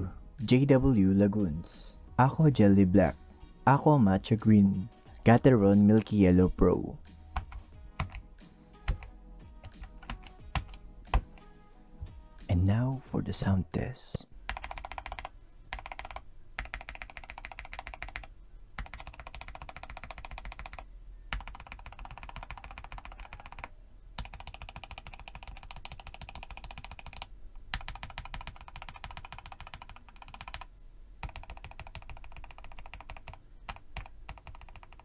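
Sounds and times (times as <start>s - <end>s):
mechanical keyboard typing: 7.4s - 8.2s, 8.9s - 11.4s, 14.5s - 35.0s.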